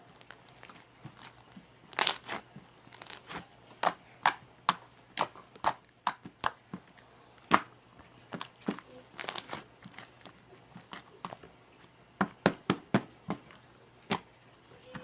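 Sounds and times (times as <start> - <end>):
slime bubbles popping: 0.1 - 4.4, 8.3 - 11.4.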